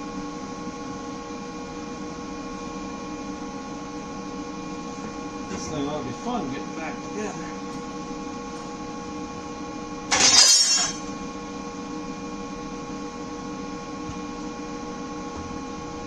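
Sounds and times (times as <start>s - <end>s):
electrical hum: 0.0s - 16.0s
loud ringing clank: 10.1s - 11.2s.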